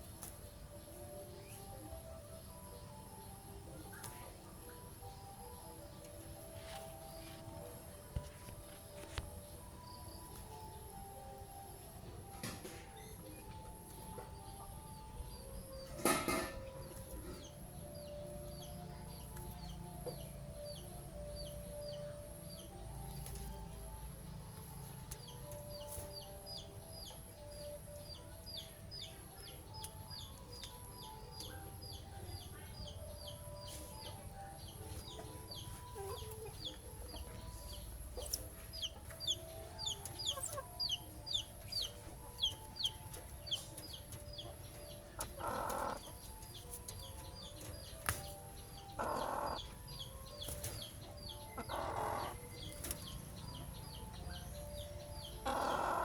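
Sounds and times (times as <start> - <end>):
chickens clucking: 15.8 - 56.0
chicken squawks: 55.4 - 56.0.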